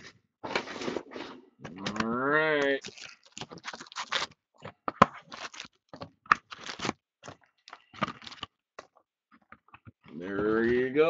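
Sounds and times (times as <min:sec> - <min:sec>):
cardboard scraping: 0:00.0 - 0:01.5
plastic wrap crinkling and tearing: 0:02.6 - 0:04.4, 0:05.0 - 0:08.5.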